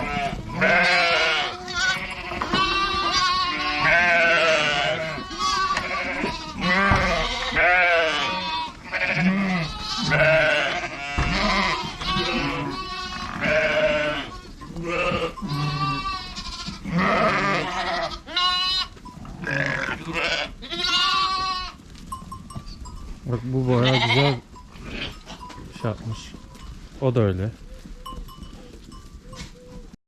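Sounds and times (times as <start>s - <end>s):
sheep bleating: 0.0s - 21.8s, 23.5s - 25.5s.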